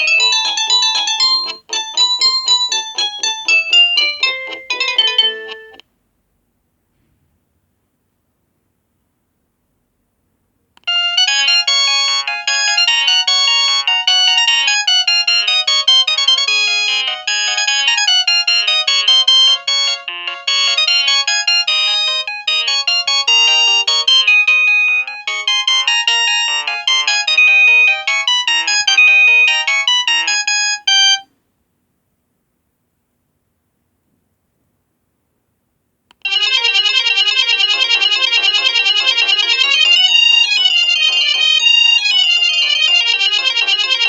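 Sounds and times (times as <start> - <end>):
electronic phone ringtone: 0.0 - 5.8, 10.8 - 31.3, 36.2 - 44.0.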